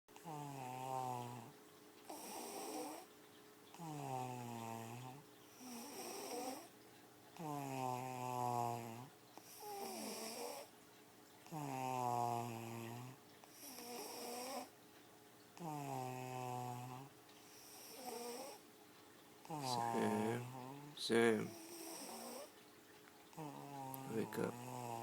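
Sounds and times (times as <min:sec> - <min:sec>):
person snoring loudly: 0:19.5 - 0:22.5, 0:23.4 - 0:25.0.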